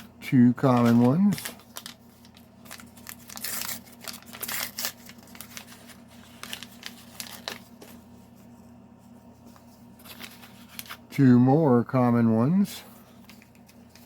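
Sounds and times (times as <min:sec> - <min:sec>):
plastic packaging crinkling: 0:00.5 - 0:08.1, 0:09.5 - 0:11.1.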